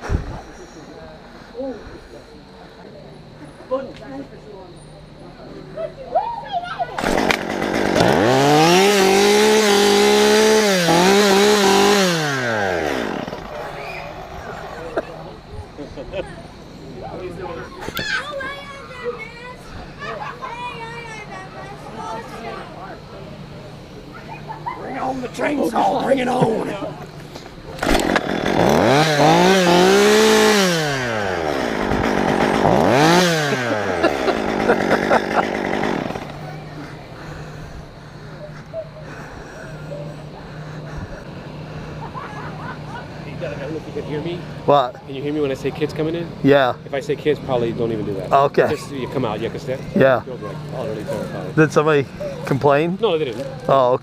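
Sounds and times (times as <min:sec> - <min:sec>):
chainsaw engine revving: 0:07.0 - 0:15.5, 0:27.6 - 0:38.4.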